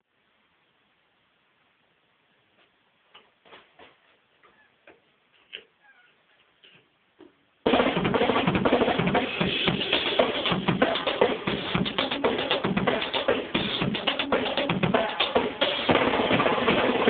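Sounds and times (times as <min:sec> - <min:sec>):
drum kit playing loudly: 0:07.7 - 0:17.0.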